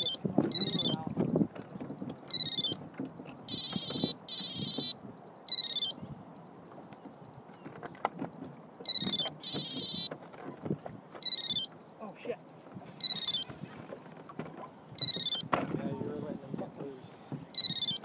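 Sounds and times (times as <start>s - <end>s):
chirping electronic tones: 0.0s - 1.0s, 2.3s - 2.8s, 3.4s - 6.1s, 8.8s - 10.1s, 11.2s - 12.0s, 12.6s - 13.8s, 14.9s - 15.5s, 16.8s - 18.0s
low rumble of wind: 0.0s - 18.0s.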